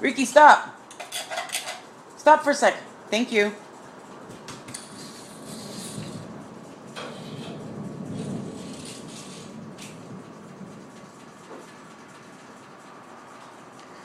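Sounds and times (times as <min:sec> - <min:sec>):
distant thunder rumbling: 0:04.2 - 0:13.7.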